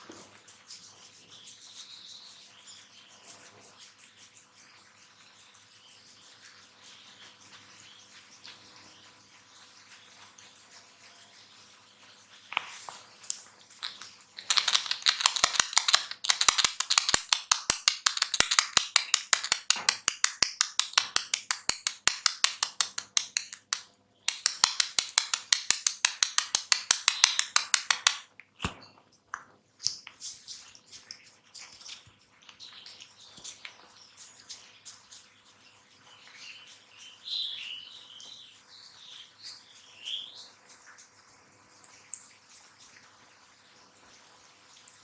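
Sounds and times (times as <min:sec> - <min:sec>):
hands striking head rhythmically: 0:14.5 - 0:28.8.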